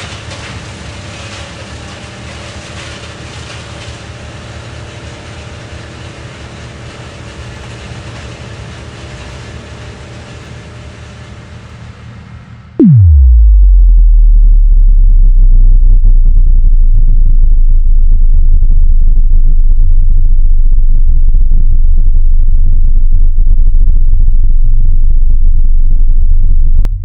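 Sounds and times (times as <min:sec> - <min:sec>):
electronic tone gliding down: 0:12.8 - 0:27.0
mechanical rumble: 0:12.8 - 0:27.0.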